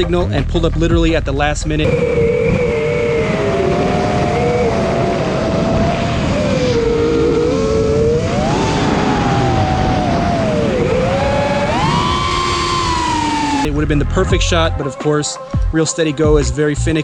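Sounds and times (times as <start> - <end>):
propeller and wind noise: 0.0 - 14.7
quadcopter motors whining: 1.8 - 13.7.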